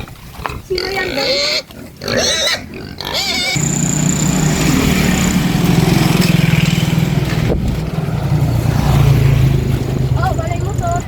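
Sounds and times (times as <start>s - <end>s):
small engine running steadily: 3.6s - 10.9s.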